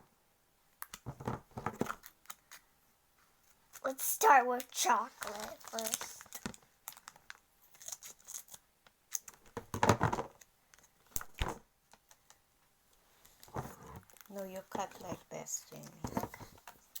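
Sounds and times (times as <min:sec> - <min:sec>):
packaging crinkling and rustling: 0:04.8 - 0:12.3, 0:13.2 - 0:14.4.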